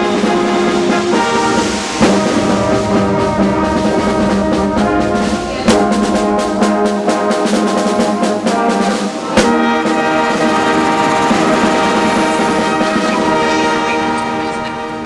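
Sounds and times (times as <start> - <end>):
brass band playing: 0.0 - 15.0
drum beat: 0.0 - 15.0
sharp drum hit: 0.7 - 8.8.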